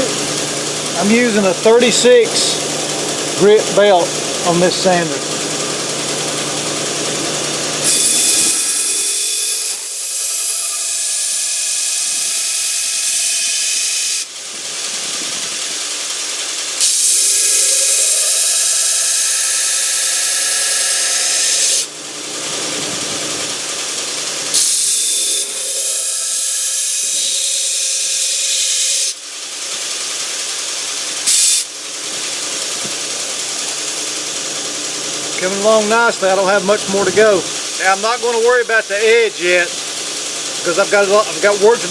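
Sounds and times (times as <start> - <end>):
belt sander running whine: 0.0 - 14.3, 16.8 - 28.9
belt sander grinding steel: 0.0 - 14.4, 16.7 - 29.2.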